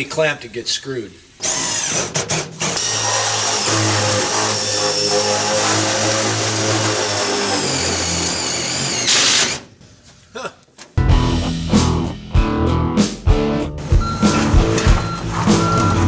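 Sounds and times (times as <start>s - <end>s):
power drill driving into sheet metal: 1.4s - 9.7s.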